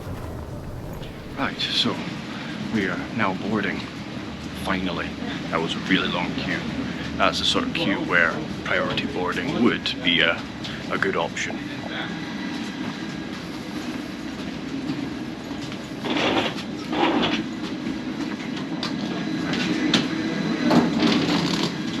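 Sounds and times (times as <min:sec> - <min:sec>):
footsteps: 0:00.0 - 0:01.7
short rushing noises: 0:00.0 - 0:01.8
low rumble of jet bridge: 0:00.0 - 0:02.0.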